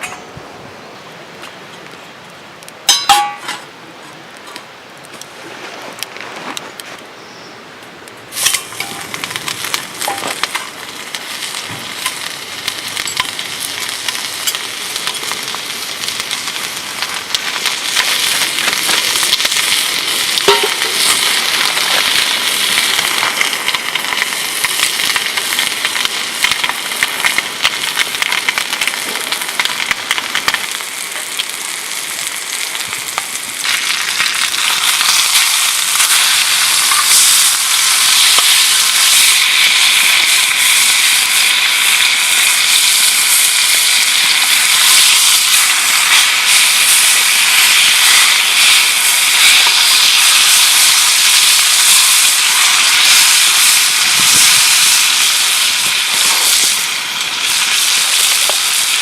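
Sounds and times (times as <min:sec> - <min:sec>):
sharp clink: 0:02.9 - 0:03.6
food sizzling in a pan: 0:08.3 - 0:59.0.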